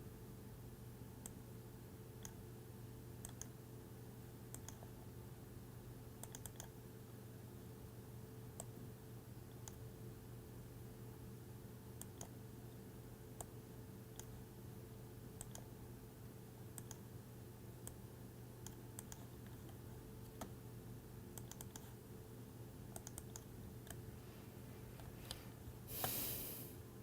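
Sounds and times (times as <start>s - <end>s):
low electrical hum: 0.0s - 27.0s
faint small clicks: 2.2s - 2.4s, 3.2s - 3.5s, 4.5s - 4.9s, 12.0s - 12.4s, 15.4s - 15.7s, 16.8s - 17.0s.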